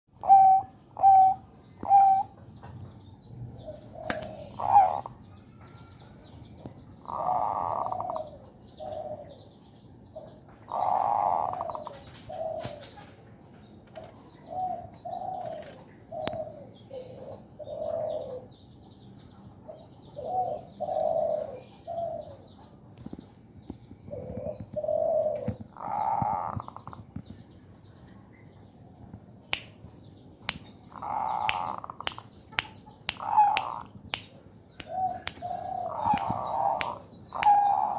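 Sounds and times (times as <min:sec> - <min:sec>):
dove cooing: 0:00.2 - 0:02.3, 0:03.6 - 0:05.2, 0:07.0 - 0:09.4, 0:10.2 - 0:13.0, 0:14.4 - 0:18.6, 0:19.7 - 0:22.6, 0:24.1 - 0:27.0, 0:31.0 - 0:31.9, 0:33.2 - 0:33.8, 0:34.9 - 0:37.9
finger clicks: 0:29.5 - 0:29.8, 0:30.4 - 0:30.7, 0:31.4 - 0:37.7.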